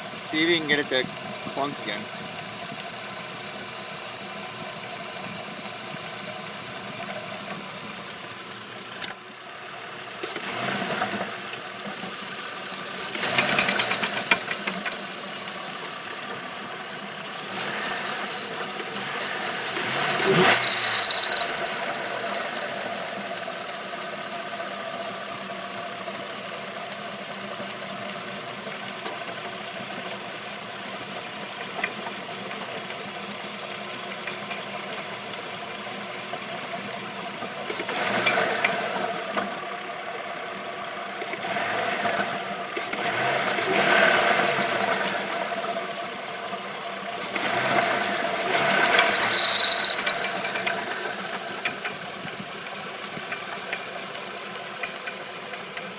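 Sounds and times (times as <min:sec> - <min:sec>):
car engine idling: 0:00.0 - 0:55.9
engine rattling: 0:00.0 - 0:55.9
high squeal: 0:19.3 - 0:22.7, 0:48.5 - 0:50.9.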